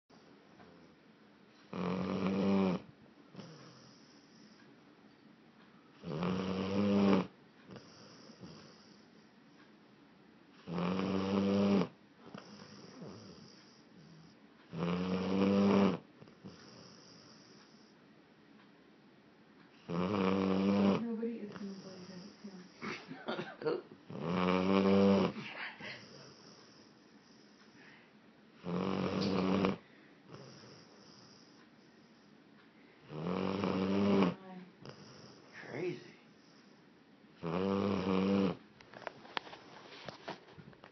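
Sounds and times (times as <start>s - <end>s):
dog snoring loudly: 1.7s - 4.6s, 6.0s - 9.2s, 10.6s - 17.9s, 19.8s - 23.0s, 24.1s - 25.4s, 26.0s - 27.6s, 28.6s - 32.3s, 33.0s - 35.7s, 37.4s - 38.6s
dog breathing quietly: 16.2s - 18.0s, 34.8s - 37.0s.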